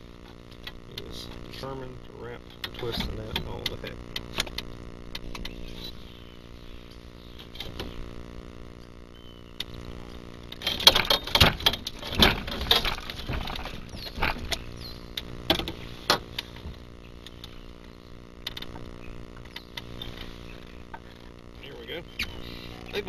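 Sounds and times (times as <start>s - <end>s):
knocks and rattles: 10.5s - 14.6s.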